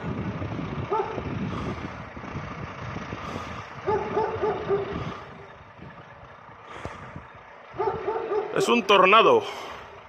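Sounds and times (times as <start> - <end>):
wind buffeting microphone: 0.0 - 8.4
dog barking: 0.9 - 1.2, 3.9 - 5.0, 7.8 - 8.7.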